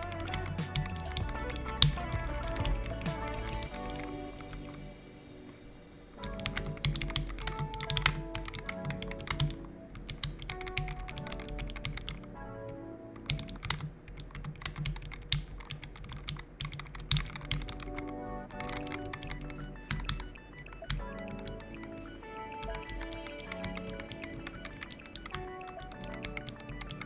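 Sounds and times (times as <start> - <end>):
background music: 0.0 - 14.4, 17.0 - 27.0
mechanical keyboard key clicks: 6.3 - 12.2, 13.3 - 18.0.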